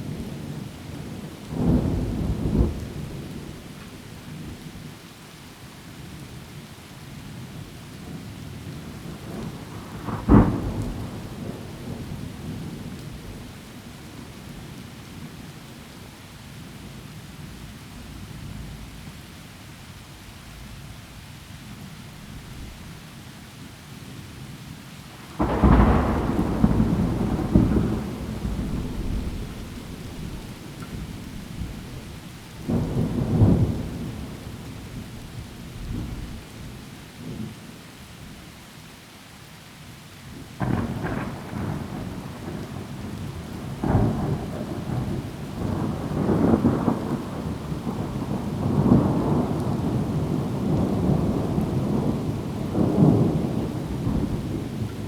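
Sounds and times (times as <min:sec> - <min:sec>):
heavy rain: 0:00.0 - 0:55.0
thunder clap and rumble: 0:00.1 - 0:03.6, 0:08.8 - 0:13.5, 0:25.3 - 0:37.4, 0:40.6 - 0:55.0
rolling thunder: 0:08.8 - 0:13.5, 0:25.3 - 0:37.5, 0:40.6 - 0:55.0.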